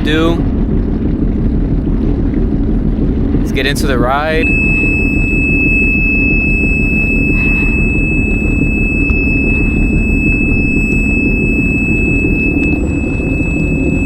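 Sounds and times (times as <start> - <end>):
engine idling rumble: 0.0 - 14.0
high-pitched warning buzzer: 4.5 - 14.0.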